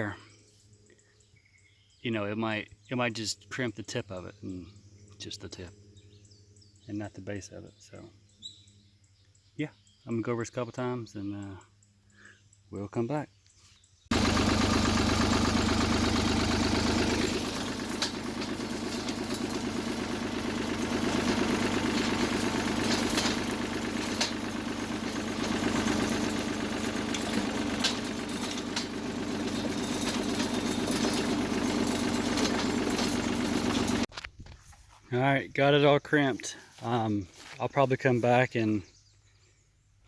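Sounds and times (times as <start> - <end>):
tractor engine running: 14.1 - 34.2
sharp metal clanks: 17.2 - 34.1.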